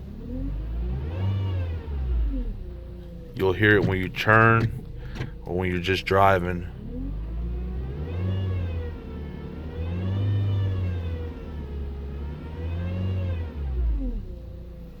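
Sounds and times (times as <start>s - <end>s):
car engine running: 2.0s - 12.2s
power steering pump whining: 2.5s - 7.0s.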